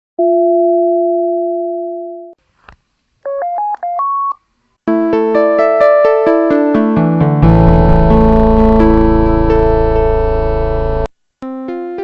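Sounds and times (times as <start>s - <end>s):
short electronic notes: 7.4s - 11.1s
two-note electronic tone: 7.4s - 11.1s.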